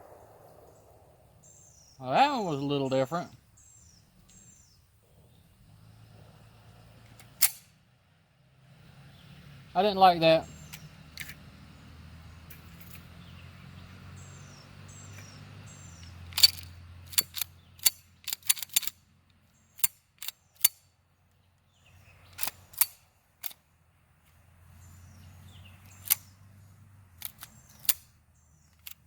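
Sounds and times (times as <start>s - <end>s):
falling bird chirps: 0.0s - 6.1s, 9.0s - 17.9s, 24.7s - 29.0s
sharp metallic clicks: 7.0s - 7.8s, 10.5s - 11.5s, 15.1s - 20.9s, 22.2s - 23.6s, 25.8s - 26.4s, 27.2s - 29.0s.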